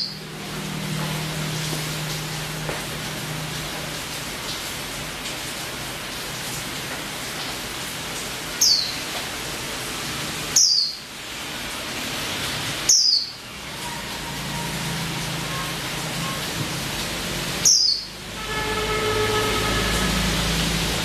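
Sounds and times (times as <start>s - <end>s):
steady loud hiss: 0.0s - 21.0s
bird chirping: 10.6s - 11.0s, 12.9s - 13.3s, 17.6s - 18.1s.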